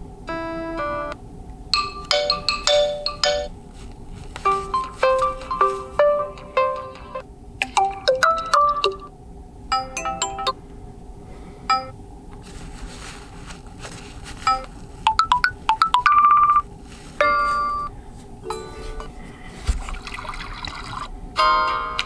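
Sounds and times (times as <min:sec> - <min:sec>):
phone ringtone notes: 0:00.3 - 0:01.2, 0:01.8 - 0:03.5, 0:04.4 - 0:09.1, 0:09.7 - 0:10.6, 0:11.7 - 0:11.9, 0:14.5 - 0:16.6, 0:17.2 - 0:19.2.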